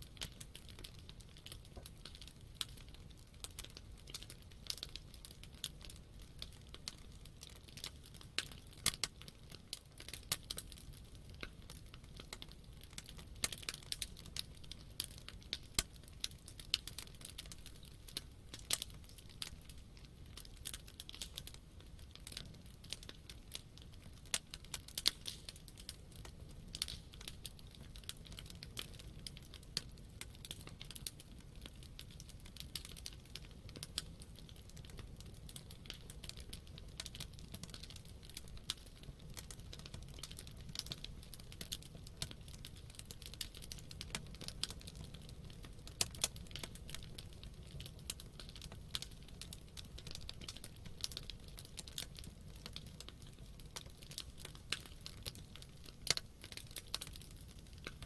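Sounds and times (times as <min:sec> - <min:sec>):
low rumble of flames: 0:00.0 - 0:58.0
wood crackling and popping: 0:00.0 - 0:58.0.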